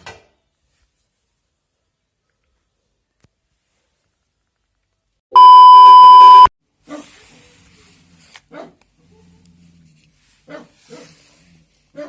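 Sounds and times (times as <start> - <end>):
loud electronic beep: 5.4 - 6.5.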